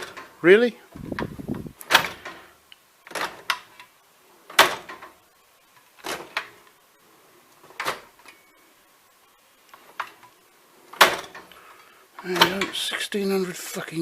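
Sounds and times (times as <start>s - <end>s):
steel drawer banging shut: 1.9s - 2.4s, 11.0s - 11.4s.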